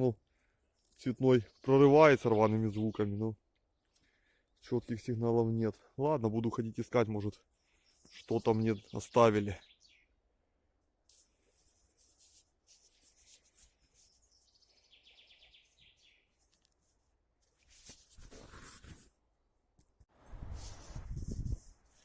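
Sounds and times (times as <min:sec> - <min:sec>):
faint bird chirping: 0:07.2 - 0:10.2, 0:12.0 - 0:16.7.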